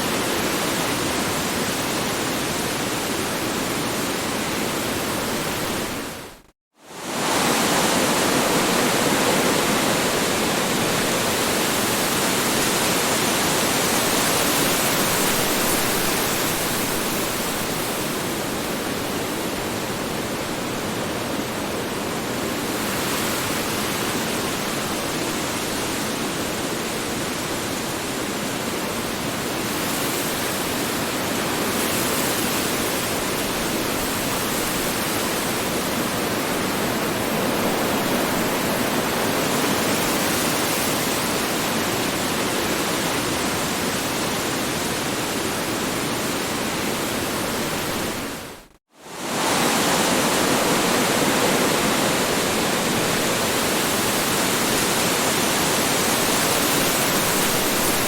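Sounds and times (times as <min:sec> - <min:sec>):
strong wind blowing: 0:33.2 - 0:58.0.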